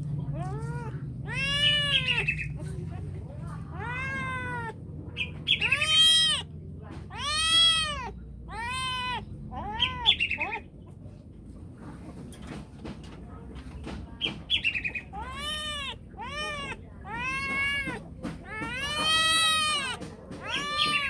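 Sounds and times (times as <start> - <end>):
cat meowing: 0.4 - 2.5, 3.6 - 10.6, 15.0 - 21.0.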